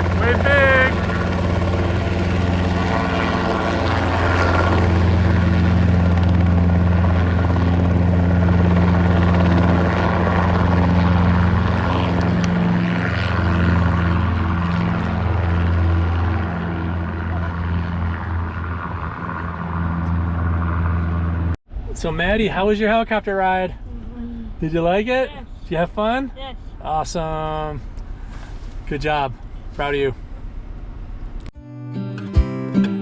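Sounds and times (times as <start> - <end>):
helicopter rotor and engine drone: 0.0 - 21.6.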